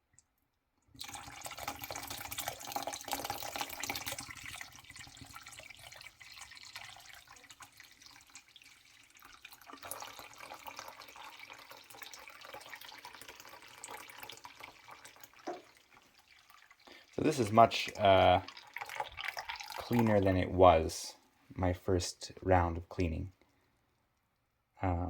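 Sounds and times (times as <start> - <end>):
water splashing into sink: 1.0 - 20.4.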